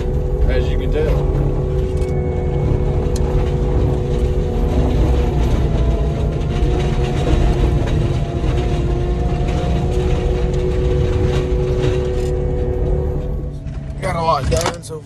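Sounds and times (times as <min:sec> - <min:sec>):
diesel engine rumbling: 0:00.0 - 0:15.0
mulcher head whining: 0:00.0 - 0:15.0.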